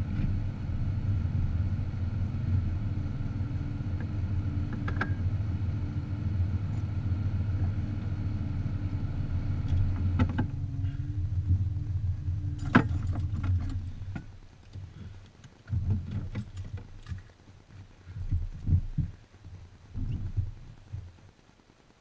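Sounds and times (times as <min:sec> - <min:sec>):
car engine humming: 0:00.0 - 0:21.1
soft knocks and thumps: 0:12.6 - 0:17.3, 0:18.1 - 0:21.2.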